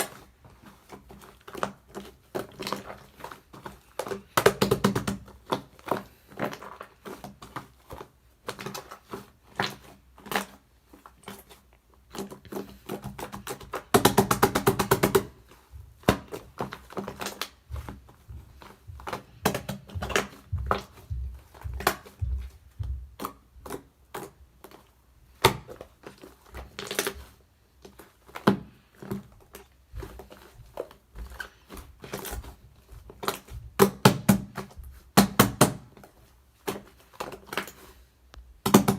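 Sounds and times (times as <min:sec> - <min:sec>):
slime crackling: 0:00.0 - 0:22.2.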